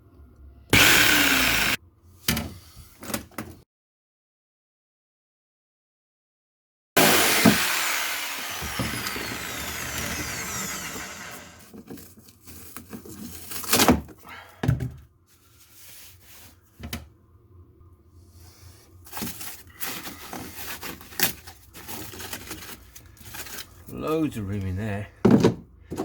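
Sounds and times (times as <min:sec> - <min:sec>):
power tool winding down: 0:00.7 - 0:01.8, 0:07.0 - 0:11.7.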